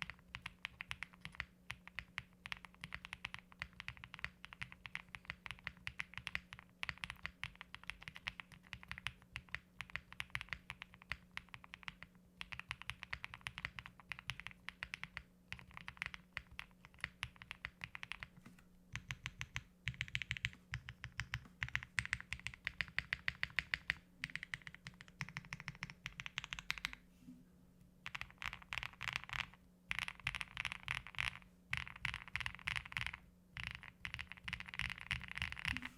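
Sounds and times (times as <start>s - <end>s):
mechanical keyboard typing: 0.0s - 18.3s, 18.9s - 27.0s, 28.0s - 35.9s.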